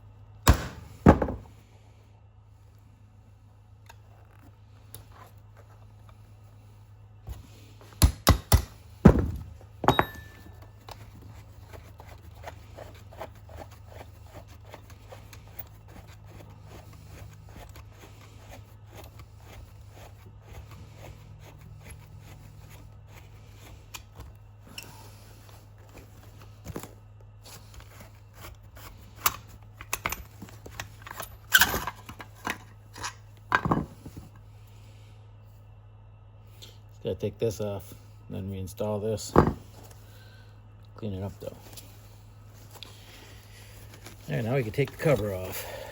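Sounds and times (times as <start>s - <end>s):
steady low hum: 0.0s - 45.9s
knocks of tools and metal parts: 0.4s - 1.5s, 7.3s - 11.0s, 29.8s - 34.4s, 39.2s - 39.9s.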